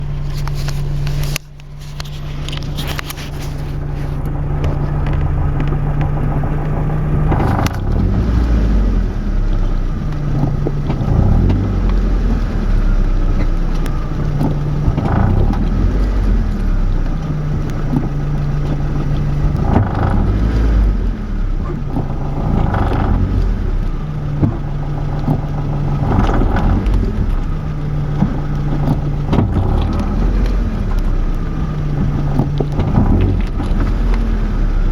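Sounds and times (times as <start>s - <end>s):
car running noise: 0.0s - 34.9s
low hum: 0.0s - 34.9s
wheel grinding noise: 0.0s - 34.9s.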